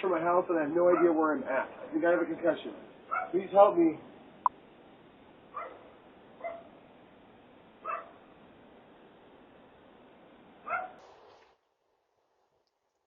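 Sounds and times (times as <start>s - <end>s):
microphone hiss: 0.0s - 11.7s
dog barking: 0.9s - 1.2s, 3.1s - 3.4s, 5.5s - 6.8s, 7.8s - 8.2s, 10.6s - 11.0s.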